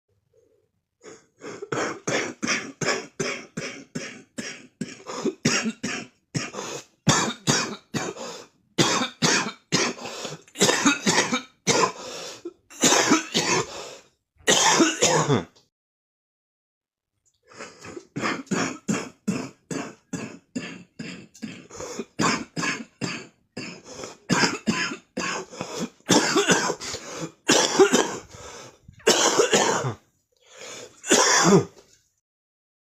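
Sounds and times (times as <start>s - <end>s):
person coughing: 1.6s - 8.2s, 8.8s - 12.0s, 12.7s - 13.7s, 14.5s - 15.5s, 17.6s - 30.0s, 31.0s - 31.8s.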